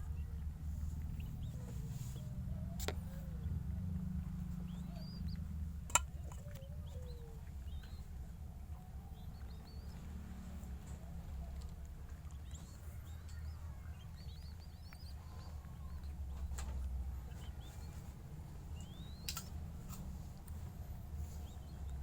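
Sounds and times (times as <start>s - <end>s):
bird chirps and squeaks: 12.4s - 20.3s.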